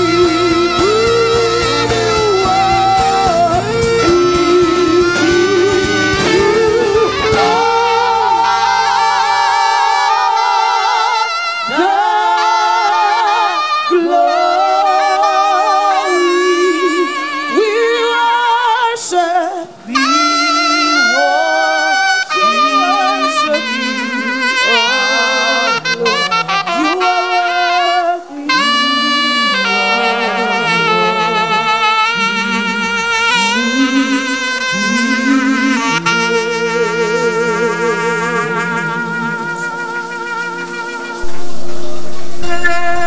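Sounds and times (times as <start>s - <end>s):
band with bass playing: 0.0s - 10.4s, 38.6s - 43.0s
solo melody with vibrato: 0.0s - 18.7s, 19.3s - 43.0s.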